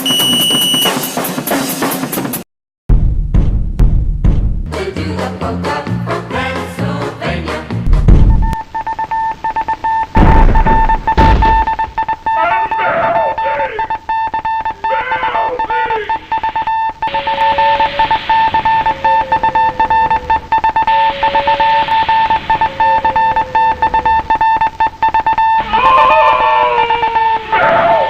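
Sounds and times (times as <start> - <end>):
morse code beeping: 0.0 - 1.1, 8.3 - 27.5
music: 0.0 - 8.6.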